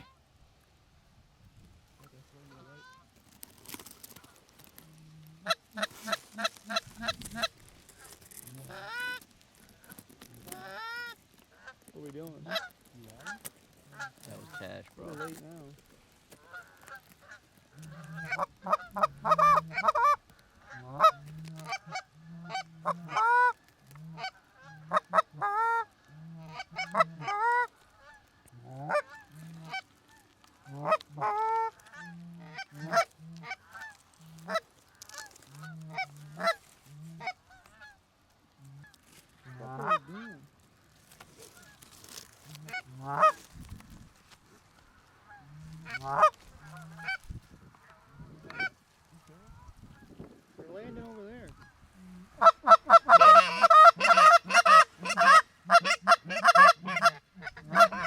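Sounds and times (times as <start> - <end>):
geese honking and clucking: 0.0 - 0.2, 2.0 - 58.0.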